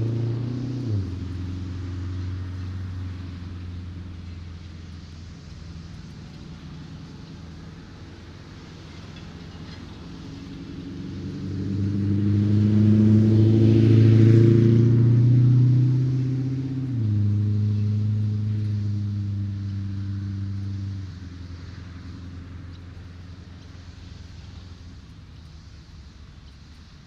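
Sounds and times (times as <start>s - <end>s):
vehicle engine hum: 0.0s - 27.0s
tyre hiss: 15.9s - 27.0s.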